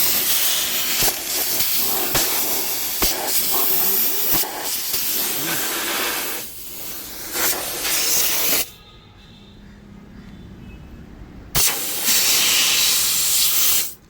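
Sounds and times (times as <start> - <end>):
loud steady hiss: 0.0 - 8.7, 11.6 - 14.0.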